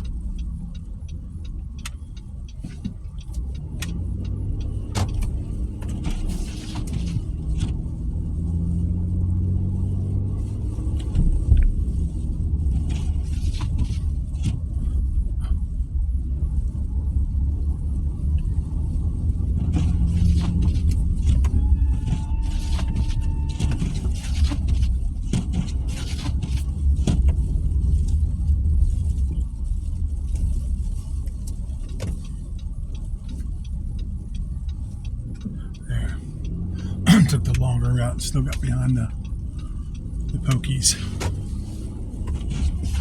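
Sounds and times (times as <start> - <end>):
small clicks and ticks: 0.0 - 8.7, 17.9 - 36.8, 38.3 - 43.0
car engine and tyres rumbling: 0.0 - 43.0.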